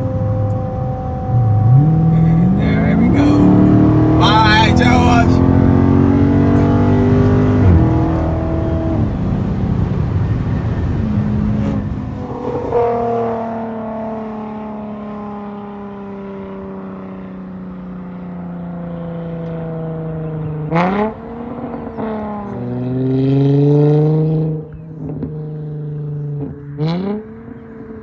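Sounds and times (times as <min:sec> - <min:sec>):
engine drone: 0:00.0 - 0:28.0
car exhaust crackling and popping: 0:06.0 - 0:14.4.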